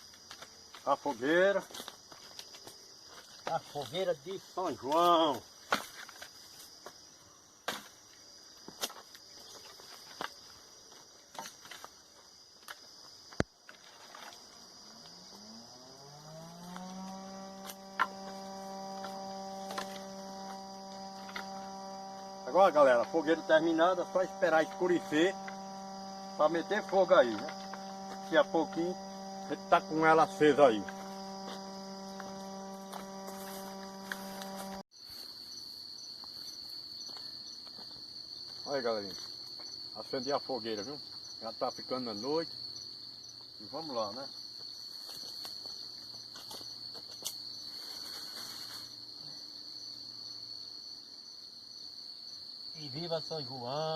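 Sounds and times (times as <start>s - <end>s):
insects chirring: 0.0s - 53.9s
motor humming: 15.4s - 34.8s.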